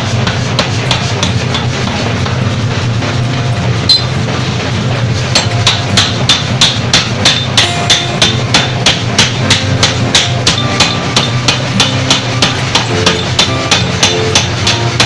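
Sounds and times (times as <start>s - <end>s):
forging hammer striking metal: 0.0s - 15.0s
low machine drive hum: 0.0s - 15.0s.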